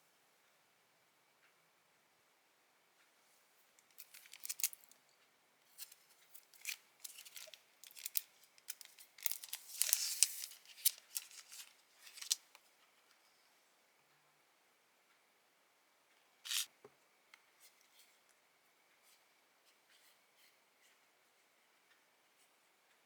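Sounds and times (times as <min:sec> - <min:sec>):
scissors snipping paper: 0:03.9 - 0:04.9, 0:05.8 - 0:12.4.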